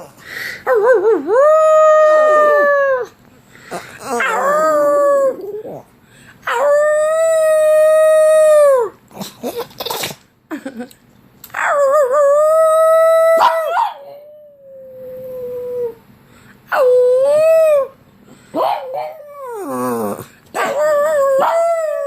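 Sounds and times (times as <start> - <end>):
dog howling: 4.0 - 5.8, 6.5 - 9.0, 11.5 - 16.0, 18.8 - 22.0.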